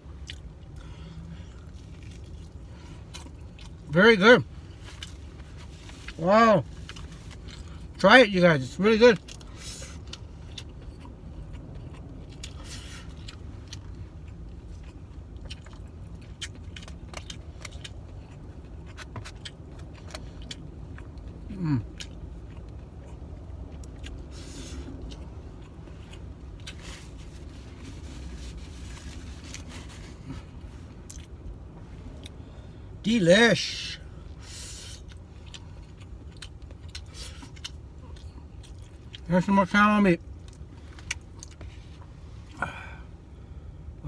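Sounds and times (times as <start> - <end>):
quiet chewing: 0.1 - 3.9, 9.2 - 31.4, 34.5 - 39.3
man saying mm: 21.5 - 21.9.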